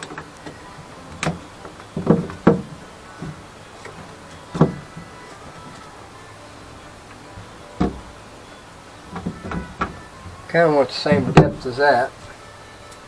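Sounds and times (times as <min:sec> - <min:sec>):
tool and wood knocking: 0:00.0 - 0:05.9, 0:07.4 - 0:08.2, 0:11.0 - 0:11.7.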